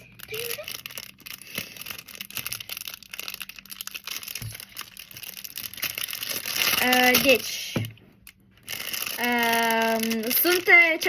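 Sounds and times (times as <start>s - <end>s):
wrapping crinkling and tearing: 0.0s - 11.0s.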